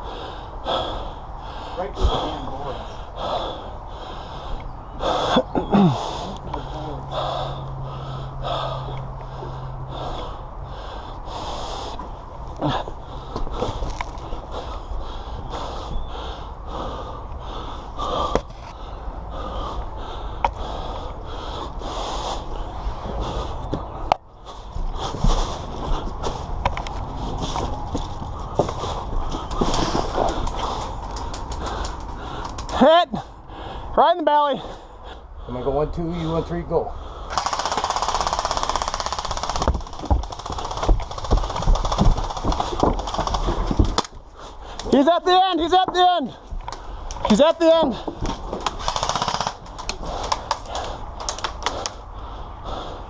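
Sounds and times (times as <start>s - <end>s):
person panting: 0.0s - 35.7s, 36.8s - 45.0s, 46.3s - 53.0s
airsoft gun full-auto burst: 37.3s - 43.5s, 48.7s - 49.7s.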